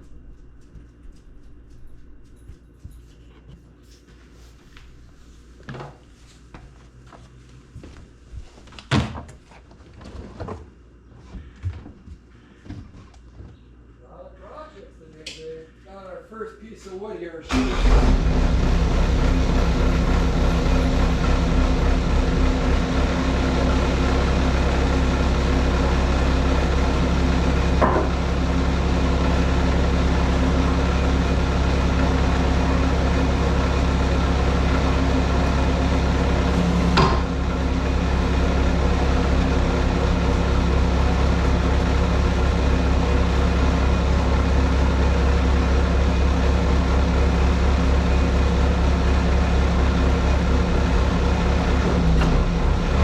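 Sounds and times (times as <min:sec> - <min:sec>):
diesel engine running: 0:17.5 - 0:53.0.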